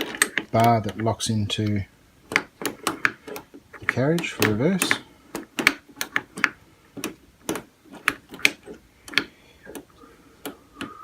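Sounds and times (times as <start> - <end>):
tapping chuck clicking: 0.0 - 11.0.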